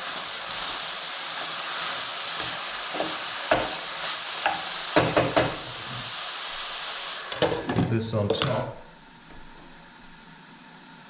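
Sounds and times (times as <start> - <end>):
food sizzling in a pan: 0.0 - 11.0
utensil knocking and scraping pan: 2.4 - 6.0, 7.3 - 8.6.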